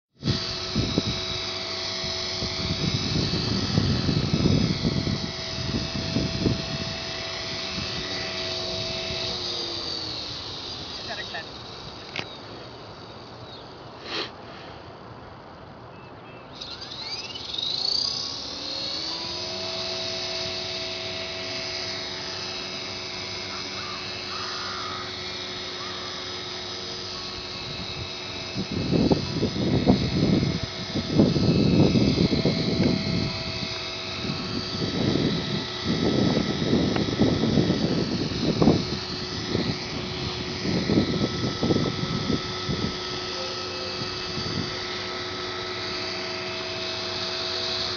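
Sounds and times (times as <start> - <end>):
rc helicopter motor whine: 0.1 - 47.9
wind buffeting microphone: 0.2 - 9.7, 27.4 - 43.3, 43.9 - 45.8.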